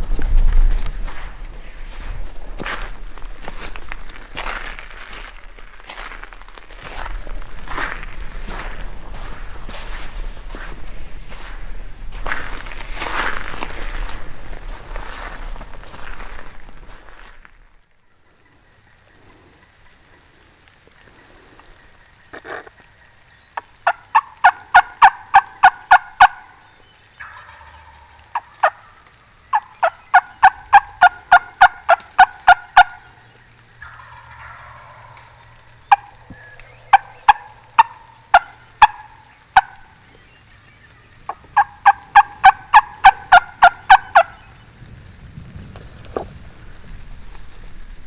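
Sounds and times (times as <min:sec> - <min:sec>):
turkey calls: 0:21.1 - 0:44.6.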